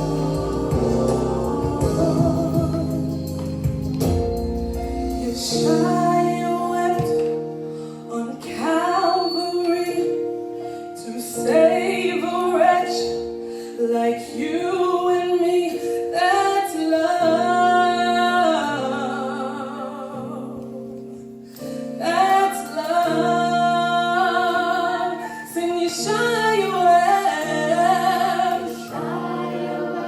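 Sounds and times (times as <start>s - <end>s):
choir singing gospel song: 0.0s - 4.3s, 22.0s - 30.0s
sustained instrumental chords: 0.0s - 7.8s.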